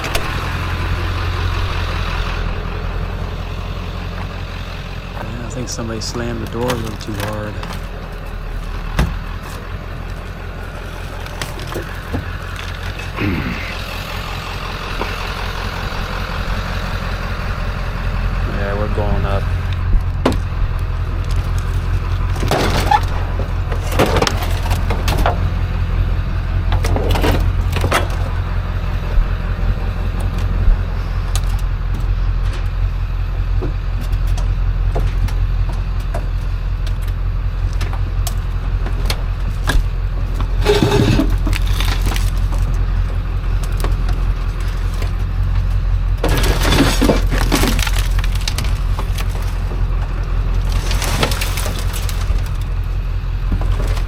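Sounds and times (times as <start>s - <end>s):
low engine hum: 0.0s - 54.0s
scrap metal crashing and clattering: 21.2s - 25.5s, 40.2s - 42.8s, 46.2s - 52.8s.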